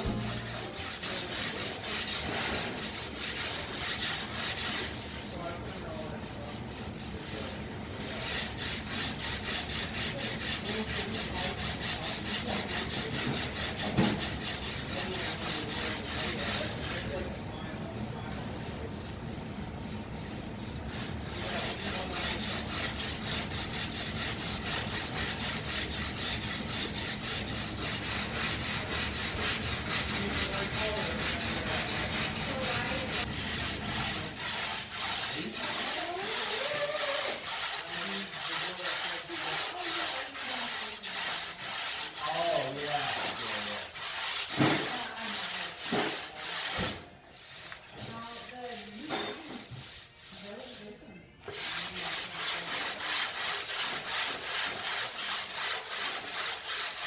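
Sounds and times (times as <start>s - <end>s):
abrasive rubbing strokes: 0.0s - 5.0s.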